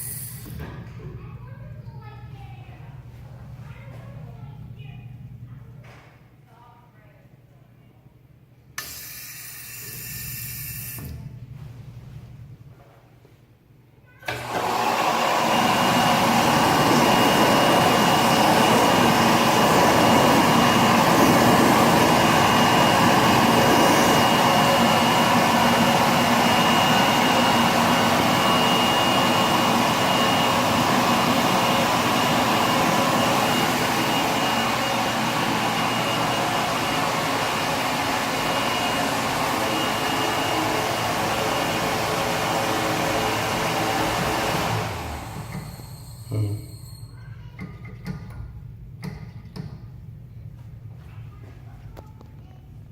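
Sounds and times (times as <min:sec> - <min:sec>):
thin high whistle: 0:00.0 - 0:00.5, 0:45.6 - 0:47.2
toilet flushing: 0:14.3 - 0:46.9.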